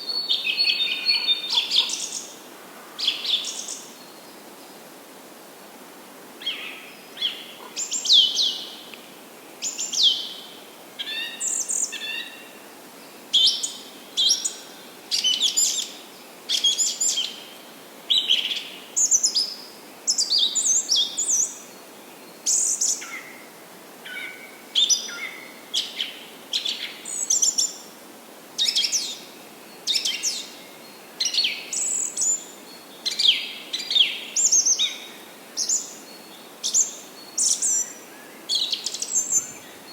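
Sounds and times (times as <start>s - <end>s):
songbirds singing and chirping: 0.0s - 2.4s, 28.6s - 39.9s
faint steady hiss: 0.0s - 39.9s.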